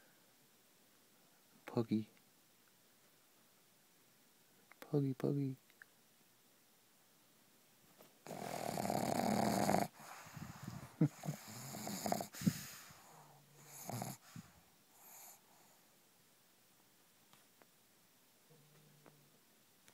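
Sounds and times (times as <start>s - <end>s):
dog snoring: 8.2s - 15.7s.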